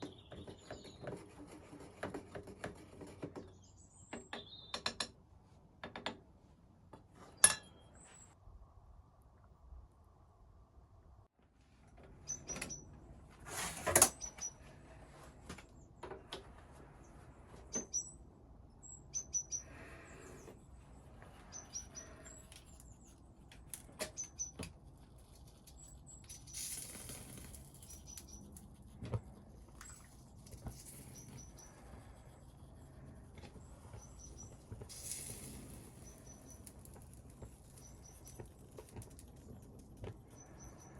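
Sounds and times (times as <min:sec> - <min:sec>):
small birds chirping: 0:00.0 - 0:01.4, 0:03.1 - 0:05.0, 0:14.2 - 0:14.8, 0:17.0 - 0:40.9
sharp clicks and knocks: 0:02.0 - 0:05.2
hissing scrapes: 0:29.8 - 0:38.4.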